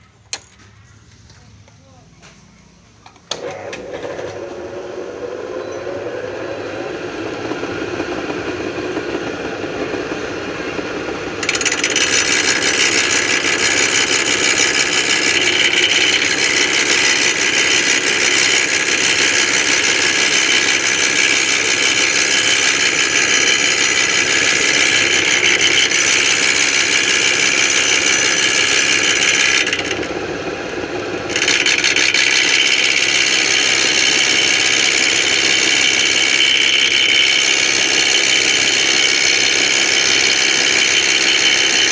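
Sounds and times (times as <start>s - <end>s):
lathe motor hum: 3.3s - 41.9s
high-pitched scraping grinding: 11.4s - 30.1s, 31.3s - 41.9s.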